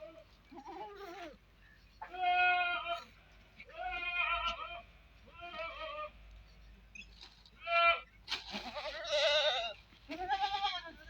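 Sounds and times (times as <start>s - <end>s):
goats bleating: 2.0s - 6.2s, 7.6s - 11.0s.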